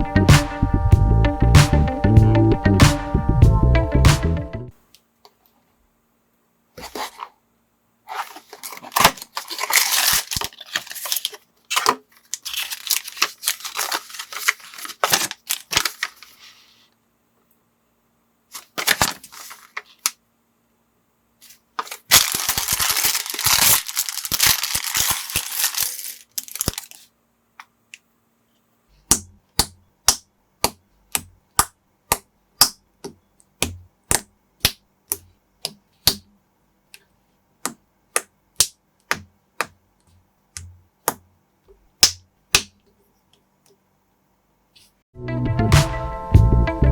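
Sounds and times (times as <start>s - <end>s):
plastic bags tearing and rustling: 8.1s - 16.6s, 18.5s - 20.1s, 21.8s - 27.1s.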